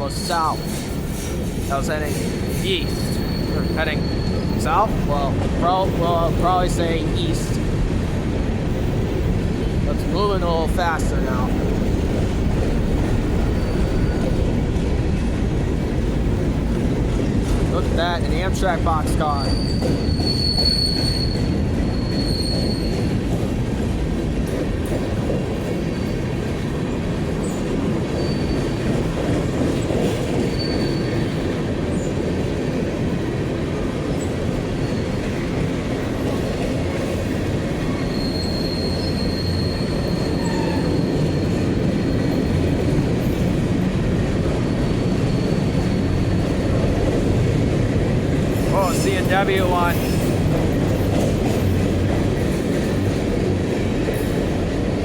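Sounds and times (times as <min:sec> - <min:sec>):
train wheels rumbling on rail: 0:00.0 - 0:55.0
high-pitched wheel squeals: 0:02.2 - 0:04.7, 0:19.4 - 0:23.2, 0:30.5 - 0:31.4, 0:37.8 - 0:42.5.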